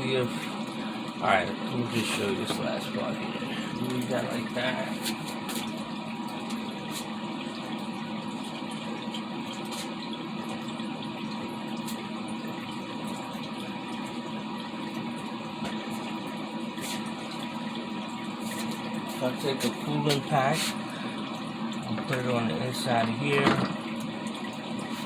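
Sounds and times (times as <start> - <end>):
air cooler fan whirring: 0.0 - 25.0
water trickling: 0.0 - 25.0.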